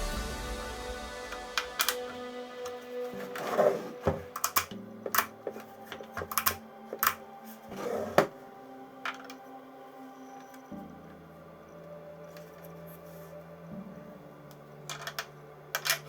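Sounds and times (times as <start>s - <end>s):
soft background music: 0.0s - 16.0s
objects clicking and knocking: 4.0s - 7.2s, 14.9s - 16.0s.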